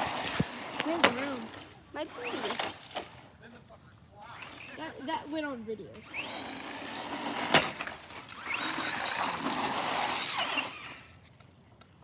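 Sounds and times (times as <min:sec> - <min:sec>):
rc car electric motor whining: 0:00.0 - 0:03.2, 0:04.2 - 0:11.2
tyres on pavement: 0:00.0 - 0:12.0.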